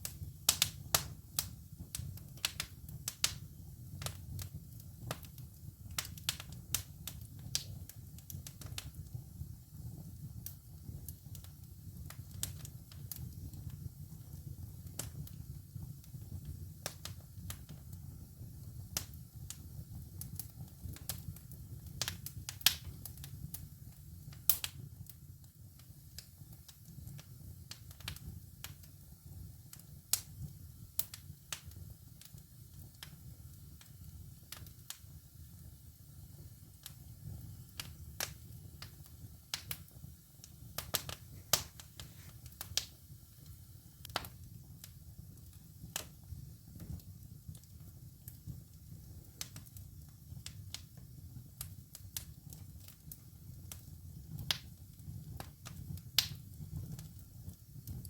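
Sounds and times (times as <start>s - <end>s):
wood fire crackling and popping: 0.0s - 58.0s.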